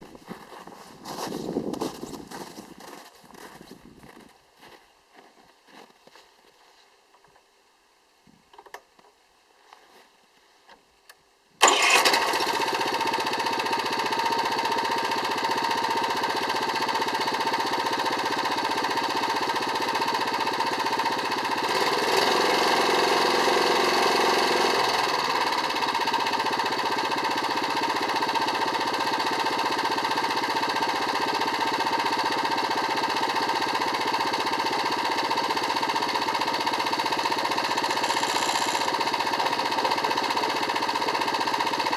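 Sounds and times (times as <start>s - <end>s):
faint starter clicks: 11.1s - 13.6s
snowblower engine running: 11.6s - 41.9s.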